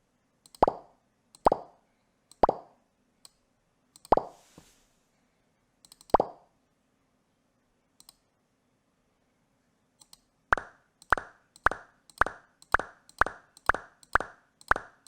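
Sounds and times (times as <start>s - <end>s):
faint mouse clicks: 0.4s - 1.6s, 3.2s - 4.4s, 5.8s - 6.3s, 8.0s - 8.3s, 10.0s - 10.3s, 11.0s - 15.0s.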